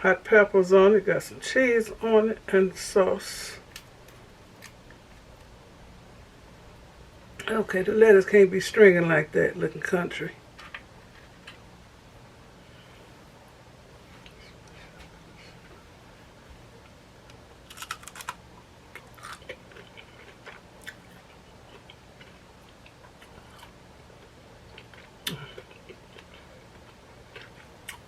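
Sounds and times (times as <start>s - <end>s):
faint low hum: 0.0s - 28.0s
tortilla chips crunching: 17.6s - 28.0s.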